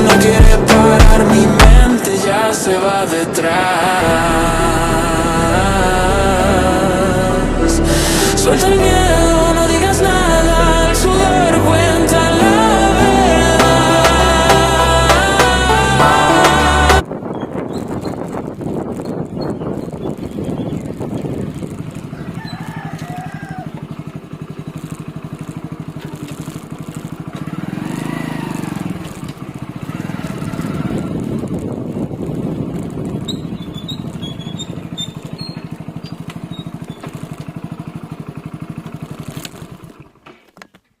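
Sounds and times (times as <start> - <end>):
motorcycle engine puttering: 11.9 - 41.0.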